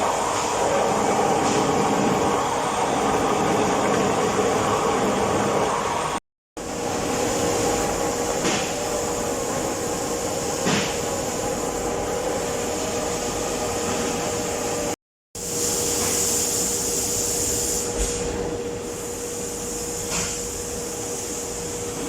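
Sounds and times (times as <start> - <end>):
lathe humming: 0.0 - 6.2.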